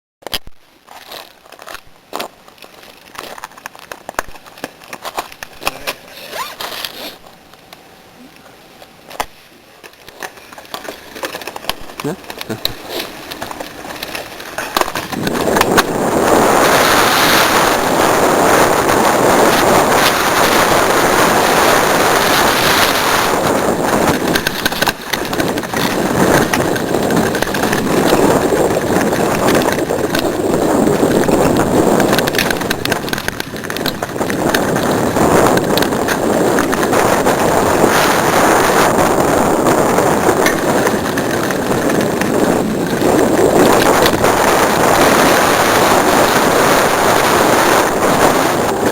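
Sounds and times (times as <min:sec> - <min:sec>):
bike knocks and rattles: 0:00.2 - 0:07.2, 0:09.1 - 0:48.9
bike tyres on dirt: 0:00.2 - 0:48.9
wind on microphone: 0:11.6 - 0:48.9.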